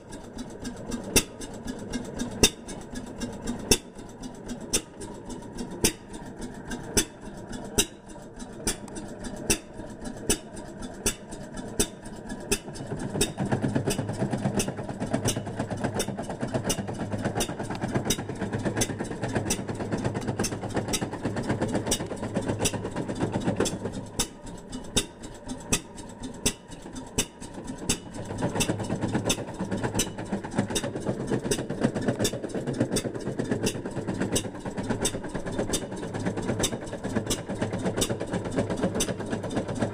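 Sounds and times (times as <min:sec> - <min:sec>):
hit-and-miss engine running: 0:00.0 - 0:39.9
sharp engine clicks: 0:00.0 - 0:39.9.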